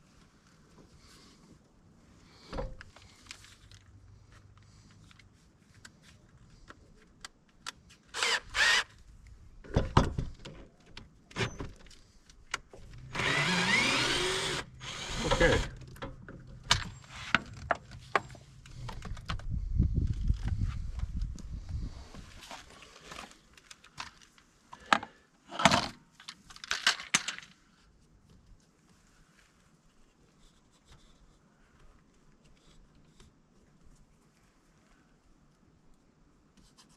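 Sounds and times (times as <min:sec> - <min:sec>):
cordless drill running: 0:08.2 - 0:08.9, 0:13.1 - 0:15.8.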